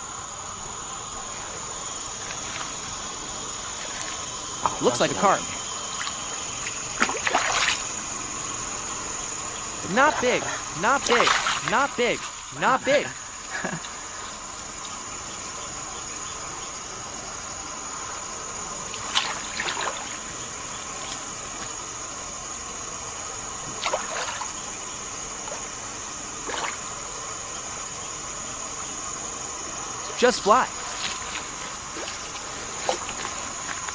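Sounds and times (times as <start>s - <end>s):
insects droning: 0.0s - 33.9s
fish splashing at surface: 7.0s - 7.8s, 11.1s - 12.4s, 19.0s - 20.1s.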